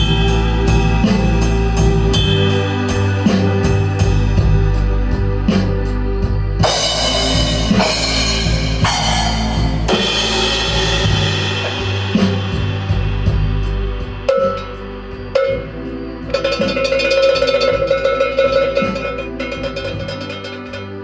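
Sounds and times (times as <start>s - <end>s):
bass and electric guitar: 0.0s - 20.2s
drum kit beat: 0.0s - 21.0s
cymbals crashing: 6.6s - 20.7s.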